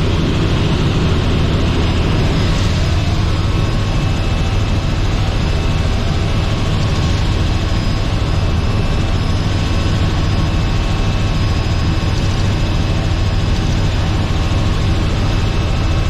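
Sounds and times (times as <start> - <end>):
helicopter rotor and engine drone: 0.0 - 16.0.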